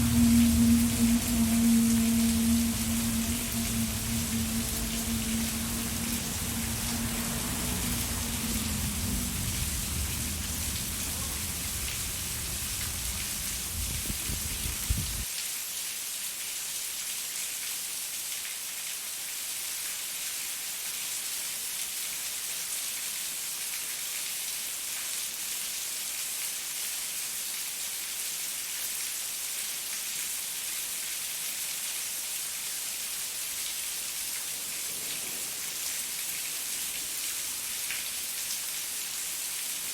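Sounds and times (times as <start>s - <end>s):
faint steady hum: 0.0s - 15.2s
low rumble: 0.0s - 15.2s
steady rain hiss: 0.0s - 39.9s.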